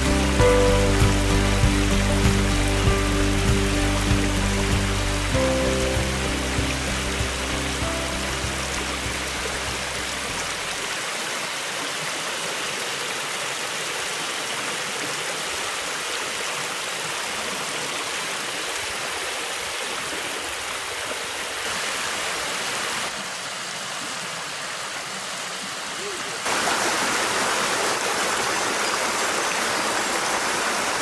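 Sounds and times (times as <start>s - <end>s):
music: 0.0s - 10.6s
stream rushing over rocks: 0.0s - 31.0s.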